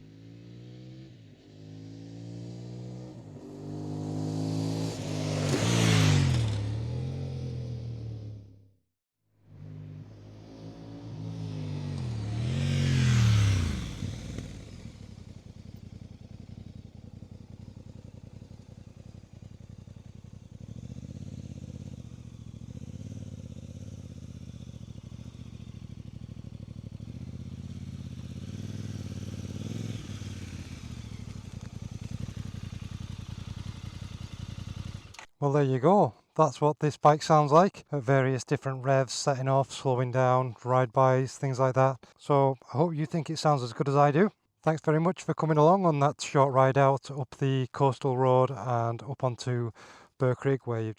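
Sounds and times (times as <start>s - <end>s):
motorcycle passing by: 0.0s - 8.6s, 9.5s - 35.2s
motorcycle engine revving: 0.0s - 8.7s, 9.5s - 35.3s.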